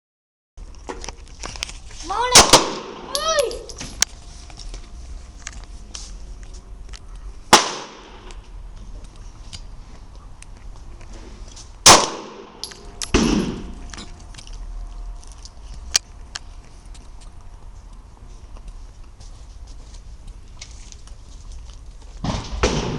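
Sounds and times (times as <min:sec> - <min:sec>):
pistol shots with echo: 0:02.4 - 0:03.1, 0:07.5 - 0:08.3, 0:11.9 - 0:13.7.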